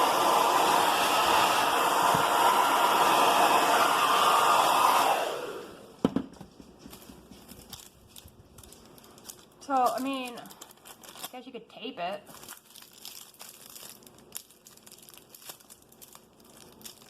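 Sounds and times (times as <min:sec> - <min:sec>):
hair dryer blowing: 0:00.0 - 0:06.0.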